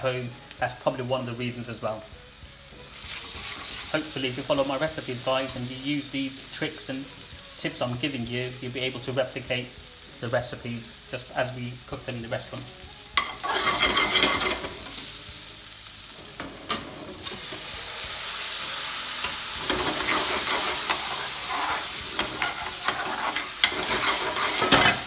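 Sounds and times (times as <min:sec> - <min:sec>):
paste sizzling in oil: 0:00.0 - 0:25.0
utensil scraping metal pan: 0:13.2 - 0:15.0, 0:16.2 - 0:17.7, 0:19.1 - 0:25.0.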